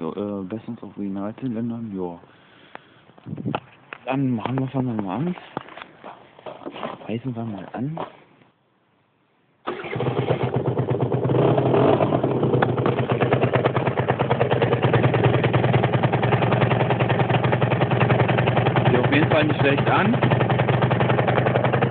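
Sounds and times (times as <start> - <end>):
scooter engine putter: 9.7 - 21.9.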